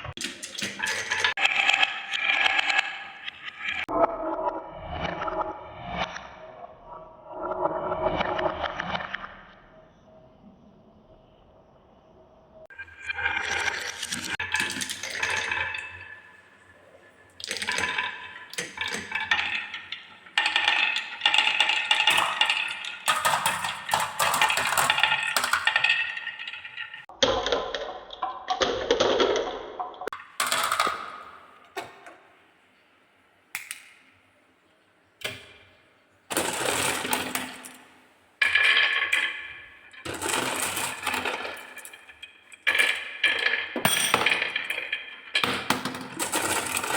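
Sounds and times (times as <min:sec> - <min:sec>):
marbles rolling on wood: 0:12.9 - 0:16.4, 0:17.2 - 0:27.1, 0:30.0 - 0:31.6, 0:36.3 - 0:46.9.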